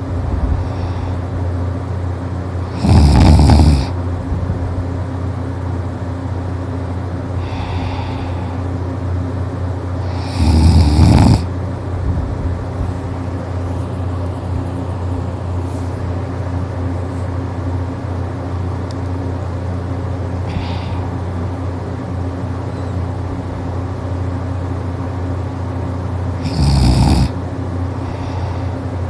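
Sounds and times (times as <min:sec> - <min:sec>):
steady low hum: 0:00.0 - 0:29.0
person snoring: 0:00.6 - 0:01.2, 0:02.7 - 0:04.0, 0:07.4 - 0:08.6, 0:10.0 - 0:11.5, 0:20.4 - 0:21.2, 0:26.4 - 0:27.4.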